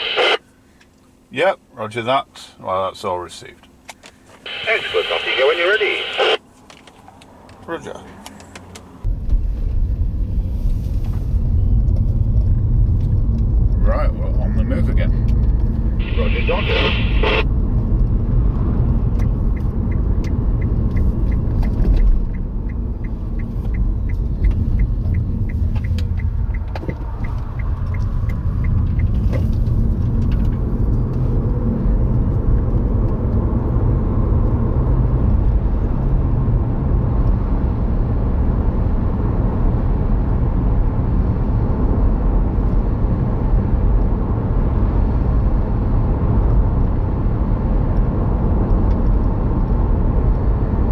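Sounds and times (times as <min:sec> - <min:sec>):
car road and engine rumble: 0:00.0 - 0:50.9
regular light ticking: 0:19.2 - 0:29.5.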